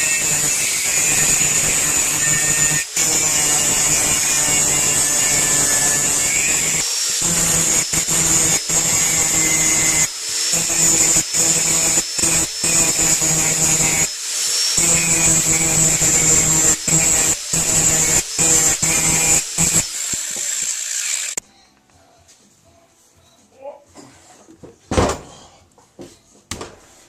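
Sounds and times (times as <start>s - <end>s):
welder arc crackling: 0.0s - 21.4s
welder low hum: 0.0s - 21.4s.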